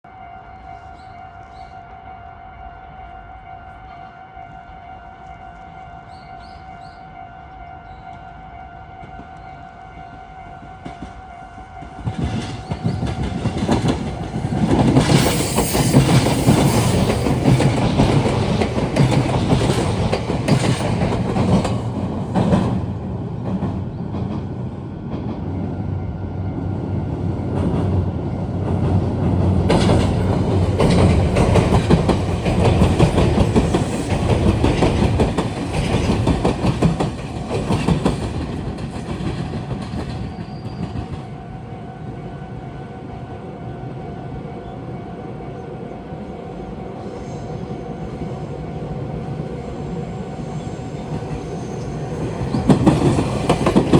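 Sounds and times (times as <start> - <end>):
electric train passing: 0.1 - 53.9
wheels clattering over rail joints: 51.2 - 53.9.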